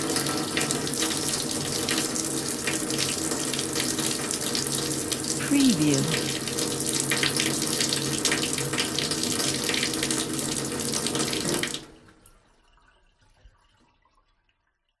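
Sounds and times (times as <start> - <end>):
faucet water splashing into tub: 0.0 - 12.0
water trickles and drips: 0.0 - 15.0.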